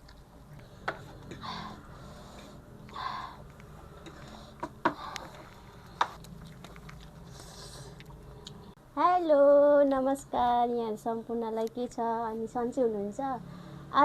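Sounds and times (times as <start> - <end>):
sharp mouth clicks: 7.9 - 8.7.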